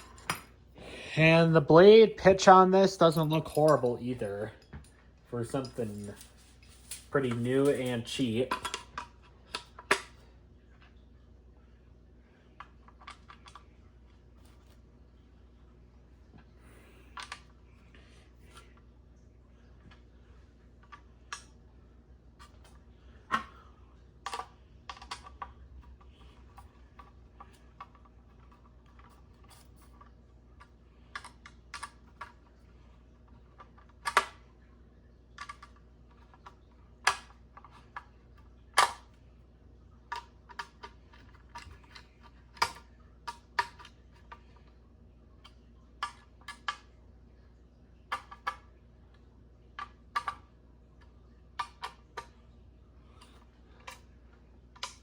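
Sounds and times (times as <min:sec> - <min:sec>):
metallic clicks and clinks: 0:03.0 - 0:04.7.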